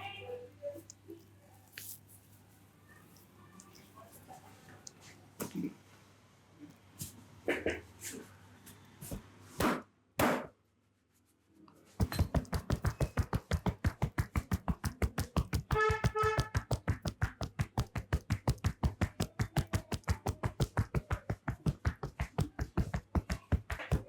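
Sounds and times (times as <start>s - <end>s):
hands tapping on a head: 12.0s - 24.0s.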